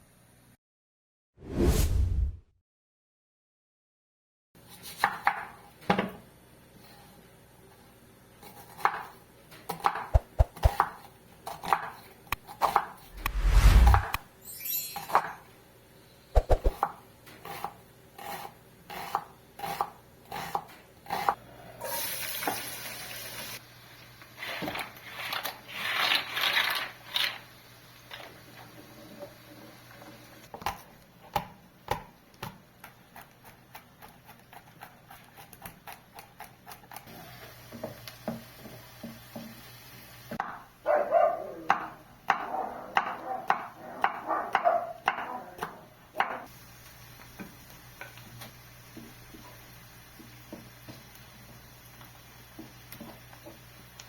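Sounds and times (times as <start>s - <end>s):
knife chopping on cutting board: 9.7s - 14.2s, 16.4s - 21.4s
knife scraping cutting board: 12.6s - 14.2s.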